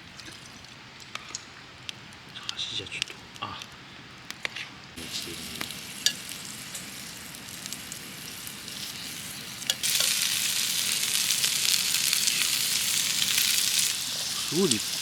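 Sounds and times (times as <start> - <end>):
meat sizzling on a grill: 5.0 - 15.0.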